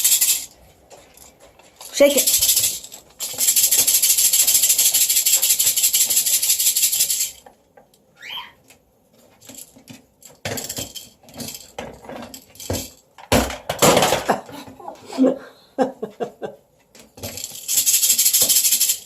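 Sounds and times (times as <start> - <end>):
rattle toy shaking: 0.0 - 7.5, 10.4 - 13.0, 17.2 - 19.0
knocks and clatter: 9.6 - 14.5.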